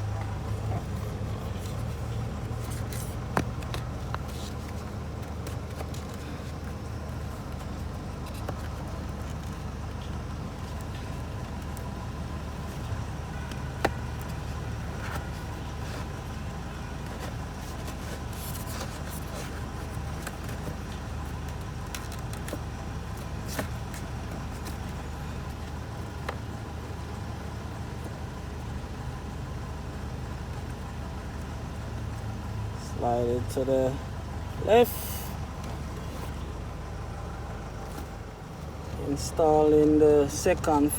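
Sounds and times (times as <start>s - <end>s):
filters rustling: 0.0s - 25.6s
low mechanical rumble: 0.0s - 40.9s.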